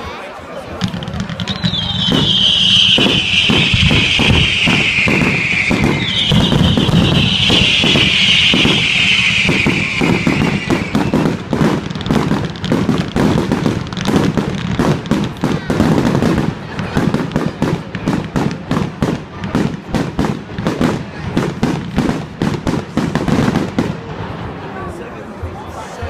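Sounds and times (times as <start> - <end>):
fireworks crackling bangs: 0.0 - 25.8
firework whistles falling in pitch: 1.4 - 11.5.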